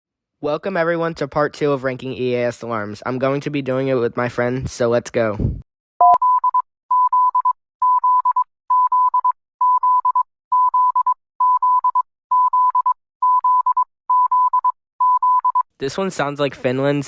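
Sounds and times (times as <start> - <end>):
stuttering alarm beeps: 6.0 - 15.6.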